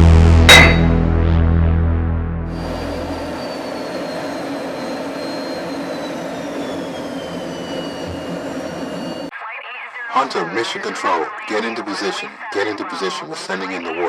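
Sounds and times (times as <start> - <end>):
high whine dropping in pitch: 2.6 - 9.3
jet engine drone: 2.6 - 9.3.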